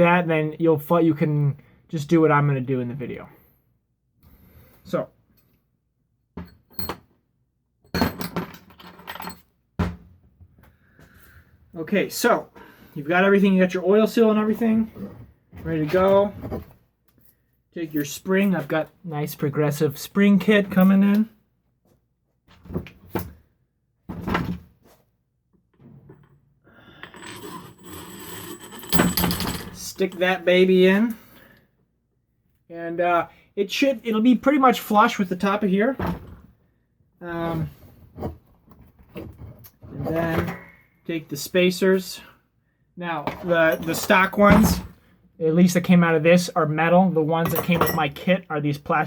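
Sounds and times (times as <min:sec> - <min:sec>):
metal parts clinking and rattling: 0:07.9 - 0:09.5, 0:27.0 - 0:30.3.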